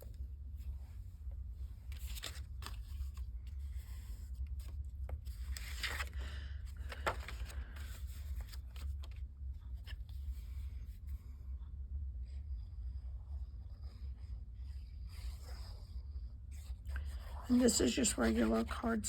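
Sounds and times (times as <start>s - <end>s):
steady low hum: 0.0s - 19.0s
paper rustling and scraping: 1.7s - 10.7s.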